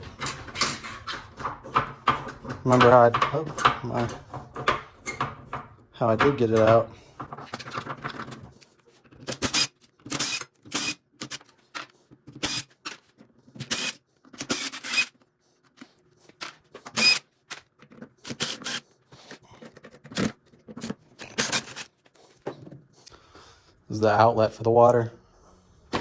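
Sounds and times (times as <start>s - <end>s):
metal parts clicking and clanking: 0.0s - 13.0s, 19.6s - 22.0s.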